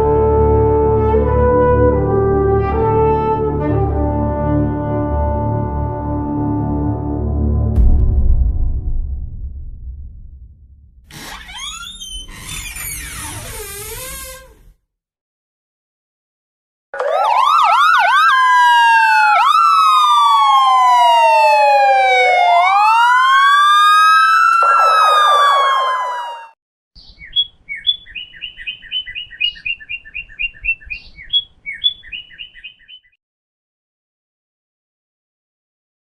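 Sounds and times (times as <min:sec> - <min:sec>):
emergency vehicle siren: 0:17.0 - 0:26.6
short high bird chirps: 0:27.0 - 0:33.2.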